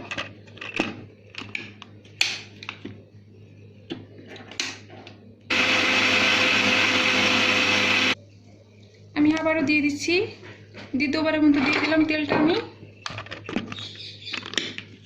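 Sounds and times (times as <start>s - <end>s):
electric blender running: 5.5s - 8.2s.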